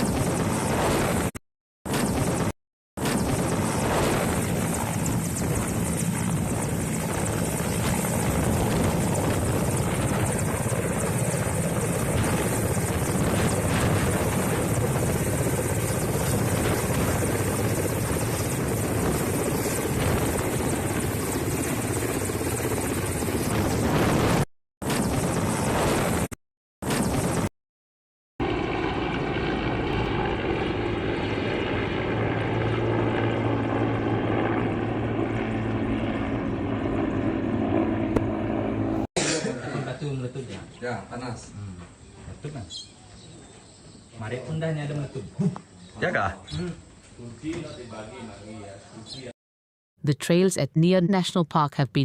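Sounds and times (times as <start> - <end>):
helicopter flying: 0.0 - 27.5, 28.4 - 39.1.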